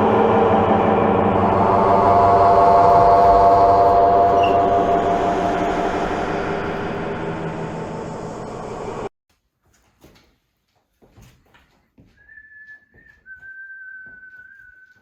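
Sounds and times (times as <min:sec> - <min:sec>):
person whistling long notes: 0:00.0 - 0:07.2, 0:12.2 - 0:15.0
loud rushing rumble: 0:00.0 - 0:09.1.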